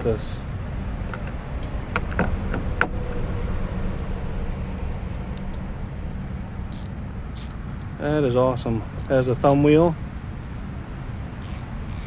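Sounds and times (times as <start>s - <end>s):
steady low rumble: 0.0s - 11.9s
ratchet clicks and knocks: 6.7s - 8.0s, 8.9s - 9.6s, 11.4s - 12.0s.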